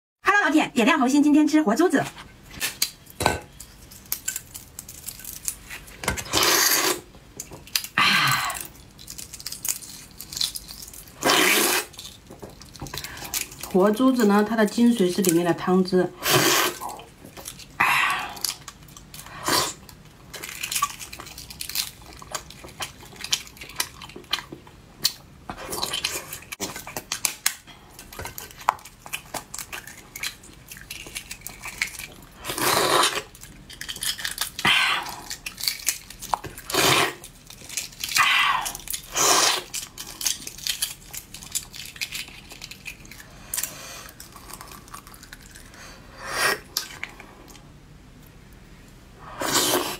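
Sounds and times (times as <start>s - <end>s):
chewing: 16.8s - 45.8s.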